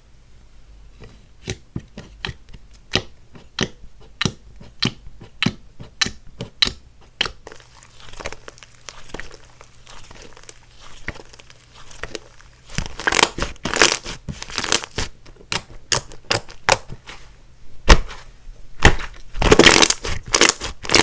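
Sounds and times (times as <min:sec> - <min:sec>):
slime popping and squishing: 0:06.5 - 0:16.9, 0:18.8 - 0:21.0.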